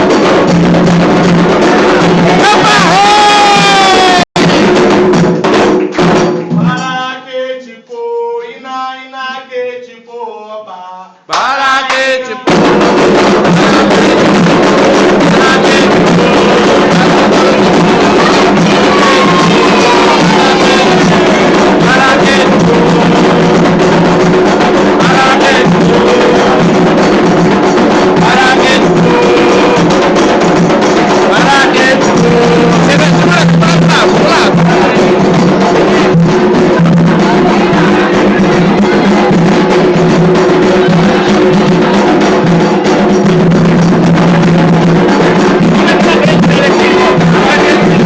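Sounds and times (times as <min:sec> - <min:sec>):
ritual drumming: 0:00.0 - 0:09.6, 0:11.3 - 0:48.0
group singing: 0:01.2 - 0:05.1, 0:06.2 - 0:48.0
lone singing voice: 0:06.6 - 0:12.6, 0:15.2 - 0:27.4, 0:28.1 - 0:30.3, 0:31.0 - 0:42.2, 0:45.6 - 0:48.0.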